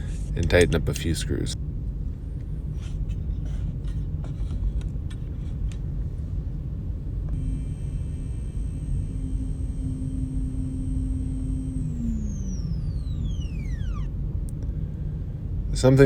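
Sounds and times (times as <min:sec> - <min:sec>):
low steady rumble: 0:00.0 - 0:16.0
stepper motor whine: 0:07.3 - 0:14.2.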